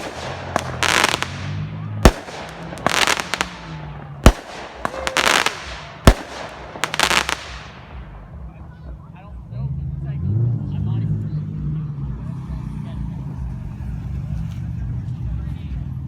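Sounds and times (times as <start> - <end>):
firework crackling: 0.0 - 8.3
firework bangs: 0.0 - 8.4.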